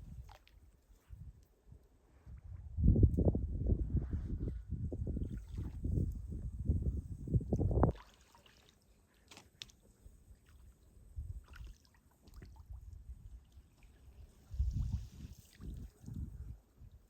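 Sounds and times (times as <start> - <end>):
faint water splashes: 0.0 - 1.2, 5.2 - 6.4, 7.5 - 17.0
wind buffeting microphone: 2.2 - 8.0, 14.5 - 17.0.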